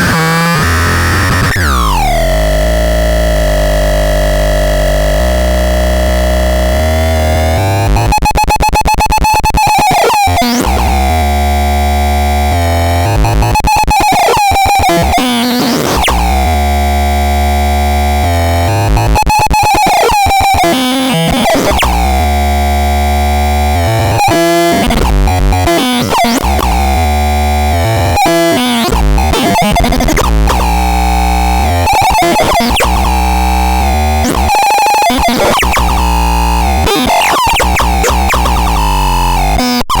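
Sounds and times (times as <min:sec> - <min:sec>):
heavy bass synthesizer drones: 0:00.0 - 0:08.1, 0:10.7 - 0:13.5, 0:16.1 - 0:19.2, 0:21.7 - 0:31.9, 0:32.7 - 0:34.6, 0:35.5 - 0:36.9, 0:37.6 - 0:39.6
buzzing warbling synthesizer tones: 0:00.0 - 0:08.2, 0:09.2 - 0:40.0.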